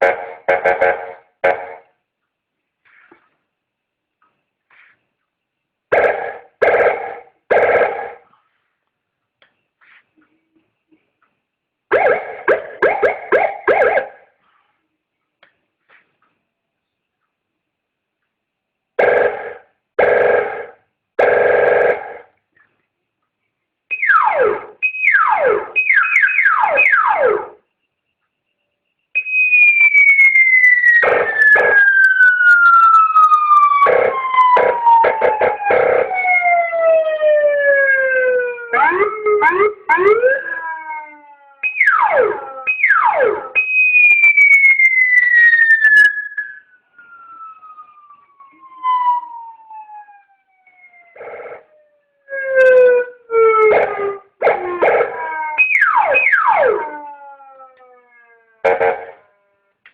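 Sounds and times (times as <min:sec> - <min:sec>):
electronic siren wailing and chirping: 0:05.9 - 0:08.3, 0:11.9 - 0:14.4, 0:23.9 - 0:27.8, 0:29.1 - 0:59.8.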